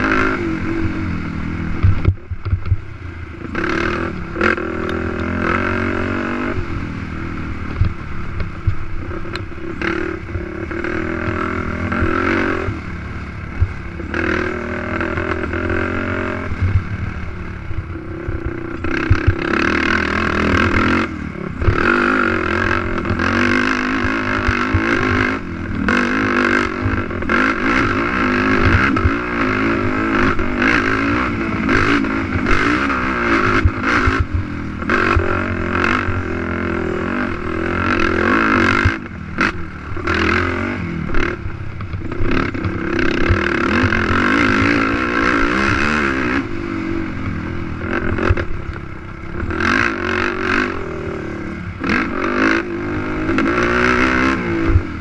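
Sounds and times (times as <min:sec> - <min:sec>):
atv engine revving: 0:00.0 - 0:55.0
knocks and clatter over rough ground: 0:01.8 - 0:05.6, 0:07.7 - 0:12.4, 0:17.8 - 0:46.4.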